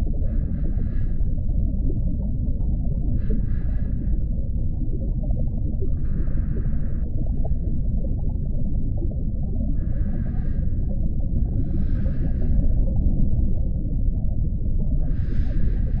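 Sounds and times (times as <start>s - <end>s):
deep underwater rumble: 0.0s - 16.0s
scuba regulator breathing: 0.3s - 1.3s, 3.2s - 4.3s, 6.0s - 7.1s, 9.8s - 11.0s, 11.6s - 12.8s, 15.0s - 16.0s.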